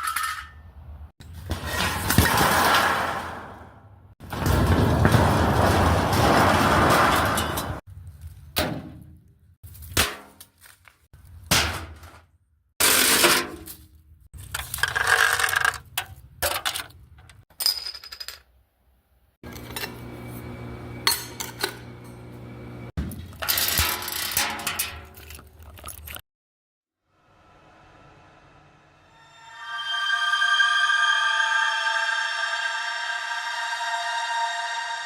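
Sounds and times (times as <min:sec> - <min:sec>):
metal scraping: 0:01.2 - 0:07.9.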